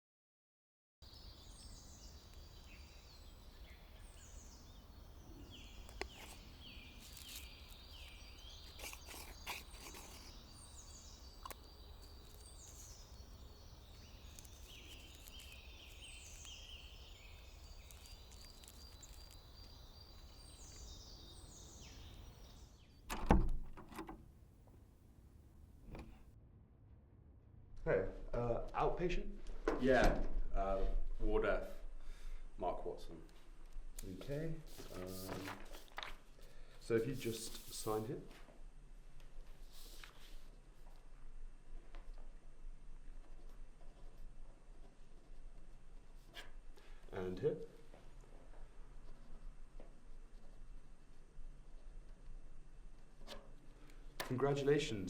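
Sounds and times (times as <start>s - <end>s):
bird chirps: 1.0s - 23.1s
outdoor ambience: 1.0s - 55.0s.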